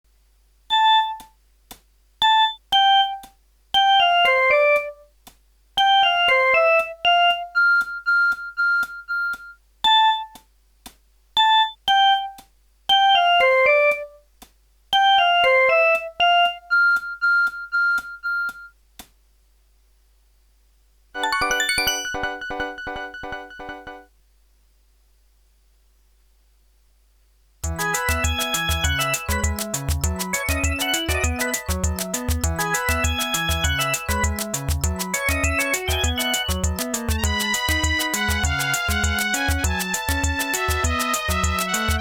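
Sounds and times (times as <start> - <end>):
phone ringtone melody: 21.2 - 24.0, 27.7 - 41.4.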